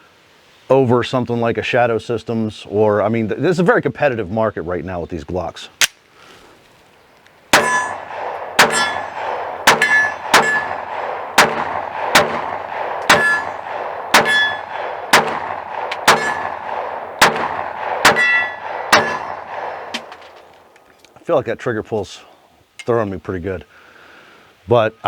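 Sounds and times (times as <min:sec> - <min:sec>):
pistol shots: 0:07.5 - 0:20.4
steel target ringing: 0:07.6 - 0:20.4.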